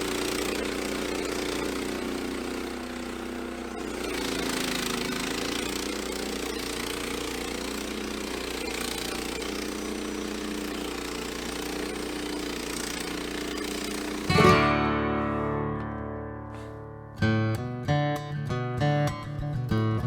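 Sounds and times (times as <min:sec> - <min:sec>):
sawmill engine running: 0:00.0 - 0:17.8
strummed acoustic guitar music: 0:12.7 - 0:20.0.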